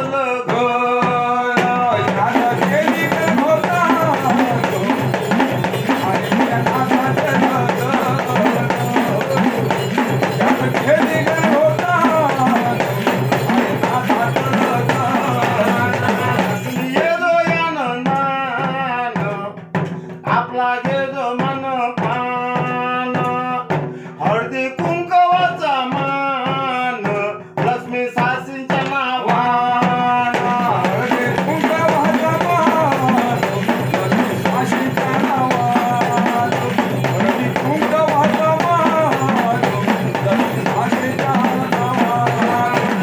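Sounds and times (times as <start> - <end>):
quick hand-drum strokes: 0.5 - 17.7, 22.0 - 43.0.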